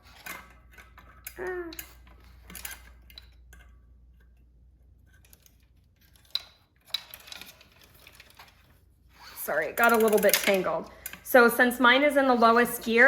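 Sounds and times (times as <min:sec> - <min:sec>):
bicycle chain clinking and rattling: 0:05.0 - 0:11.4.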